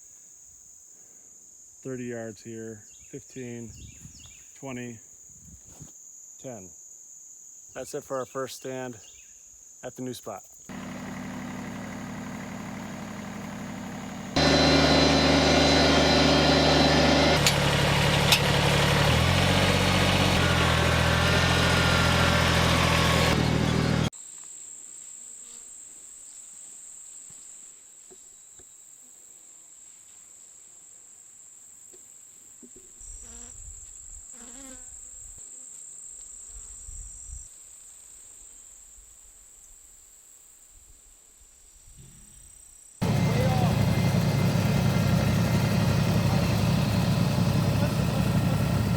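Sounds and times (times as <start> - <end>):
high-pitched insect trill: 5.2 - 8.4
loud sustained tones: 14.4 - 21.1
low rumbling: 43.0 - 48.9.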